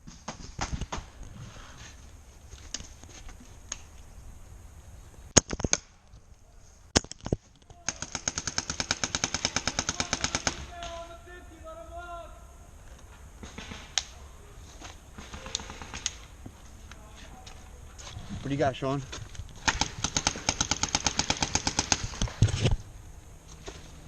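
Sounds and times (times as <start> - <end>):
person calling out: 9.9 - 12.6
paintball markers firing: 15.2 - 16.3, 19.6 - 22.4.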